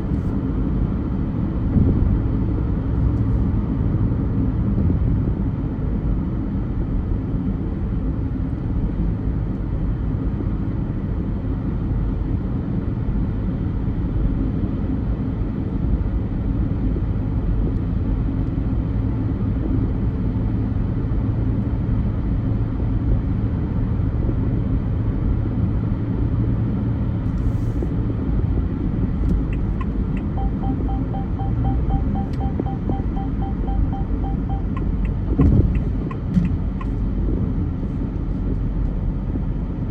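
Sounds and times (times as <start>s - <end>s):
car engine and road noise: 0.0s - 39.9s
regular ticking: 29.3s - 36.9s.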